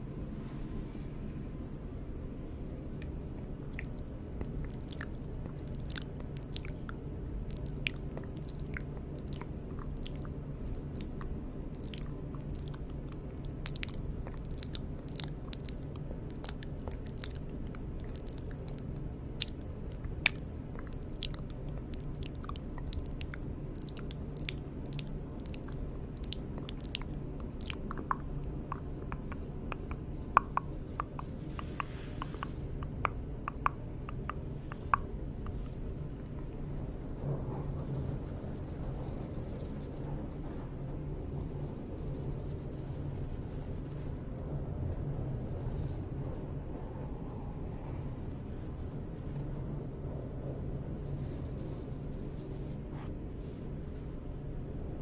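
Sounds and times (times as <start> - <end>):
steady low hum: 0.0 - 55.0
wet mouth clicks and smacks: 3.7 - 35.7.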